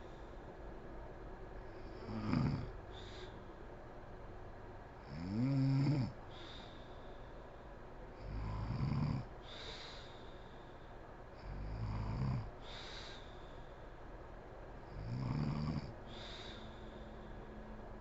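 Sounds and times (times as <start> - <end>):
breathy hiss: 1.7 - 3.6, 6.3 - 8.4, 9.4 - 11.6, 12.6 - 14.0, 16.0 - 17.6
woman snoring: 1.9 - 2.8, 5.1 - 6.2, 8.2 - 9.3, 11.4 - 12.5, 14.9 - 16.0.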